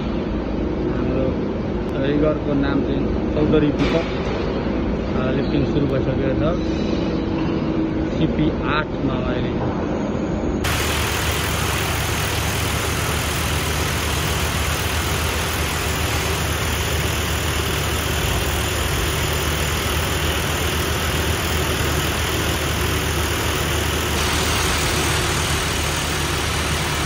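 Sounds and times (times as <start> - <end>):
heavy machinery engine droning: 10.2 - 27.0.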